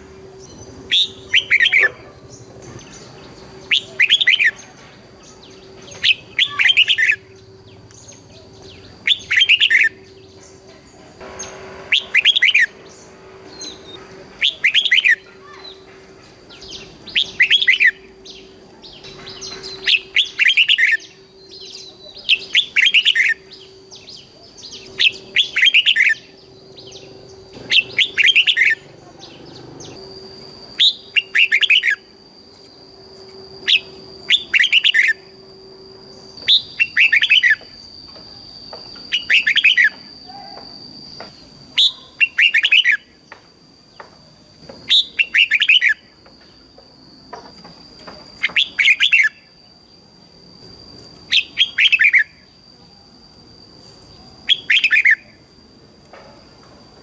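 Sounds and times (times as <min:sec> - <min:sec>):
faint electronic hum: 0:00.0 - 0:57.0
bird singing whistled phrases: 0:00.4 - 0:10.6, 0:11.4 - 0:15.9, 0:16.5 - 0:32.1, 0:33.6 - 0:35.4, 0:36.3 - 0:37.7, 0:39.0 - 0:40.6, 0:41.8 - 0:43.2, 0:44.9 - 0:46.1, 0:48.4 - 0:49.5, 0:51.3 - 0:52.6, 0:54.4 - 0:55.4.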